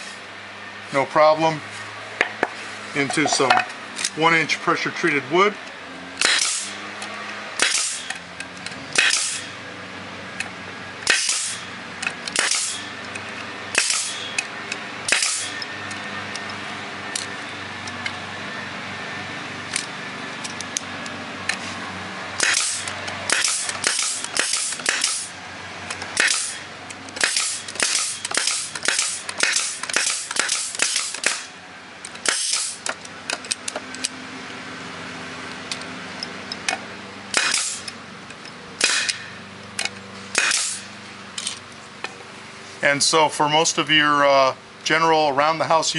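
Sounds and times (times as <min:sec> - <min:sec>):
steady low hum: 0:00.0 - 0:45.9
pneumatic stapler bangs: 0:06.2 - 0:06.8, 0:07.6 - 0:08.2, 0:08.9 - 0:09.6, 0:11.0 - 0:11.7, 0:12.3 - 0:12.9, 0:13.7 - 0:14.5, 0:15.1 - 0:15.7, 0:22.4 - 0:25.3, 0:26.2 - 0:31.5, 0:32.2 - 0:33.6, 0:37.3 - 0:38.0, 0:38.8 - 0:40.9
short hiss of air: 0:40.3 - 0:40.9.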